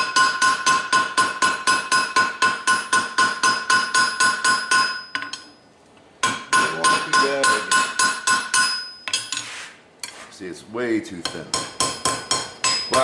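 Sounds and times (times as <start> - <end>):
hammer blows on anvil: 6.2 - 9.0.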